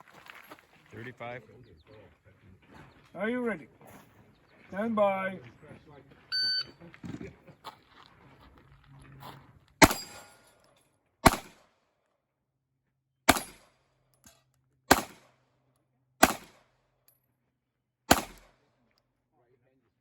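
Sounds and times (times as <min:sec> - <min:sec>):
pistol shots: 0:09.8 - 0:10.3, 0:11.2 - 0:11.7, 0:13.3 - 0:13.7, 0:14.9 - 0:15.4, 0:16.2 - 0:16.7, 0:18.1 - 0:18.6.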